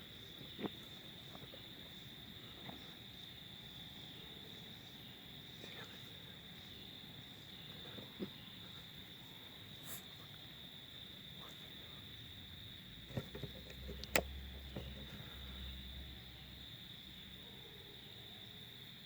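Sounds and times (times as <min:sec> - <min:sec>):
crickets chirring: 0:00.0 - 0:19.0
clicks and rustles: 0:13.0 - 0:15.2.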